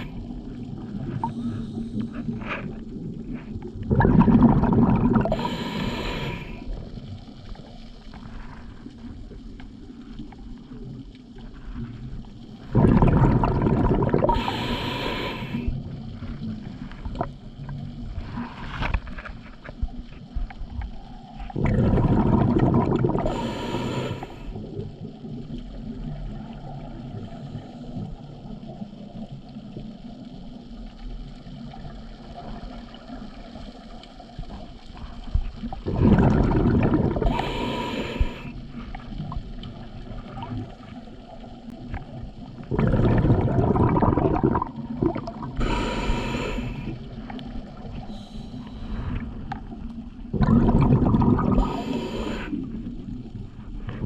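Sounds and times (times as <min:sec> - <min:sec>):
rush of exhaled bubbles: 0:00.0 - 0:09.2, 0:12.5 - 0:19.0, 0:21.4 - 0:27.7, 0:34.9 - 0:54.0
diver breathing through regulator: 0:01.2 - 0:02.8, 0:05.2 - 0:06.7, 0:12.8 - 0:15.8, 0:21.7 - 0:24.6, 0:36.0 - 0:38.8, 0:45.4 - 0:47.3, 0:47.9 - 0:49.5, 0:51.1 - 0:52.8.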